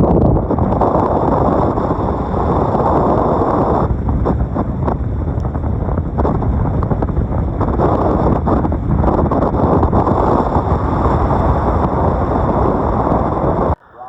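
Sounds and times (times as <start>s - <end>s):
wind buffeting microphone: 0.0s - 13.8s.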